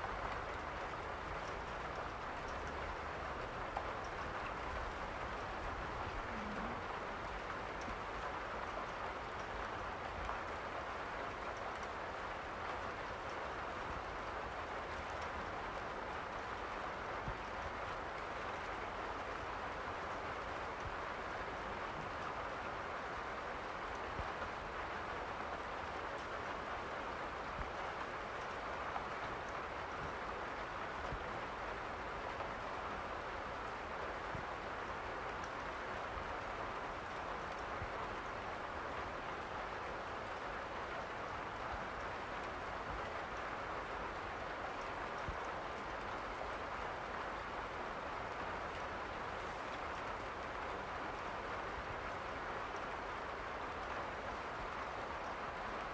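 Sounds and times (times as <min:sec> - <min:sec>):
steady rain falling: 0:00.0 - 0:55.9
faint ticks: 0:00.3 - 0:09.5.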